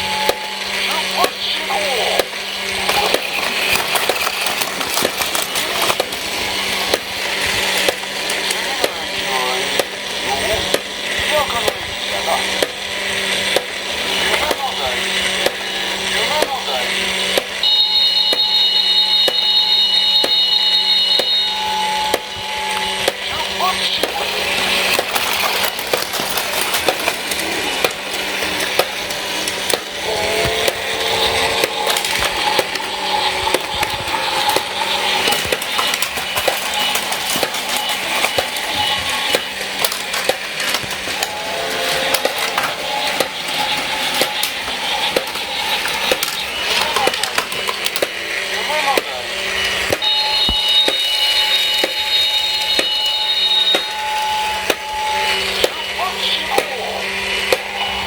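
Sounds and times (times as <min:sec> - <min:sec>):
toy train motor whir and rattle: 0:00.0 - 0:58.0
wheels clicking over track joints: 0:00.0 - 0:58.0
high electronic beeping: 0:17.6 - 0:22.9.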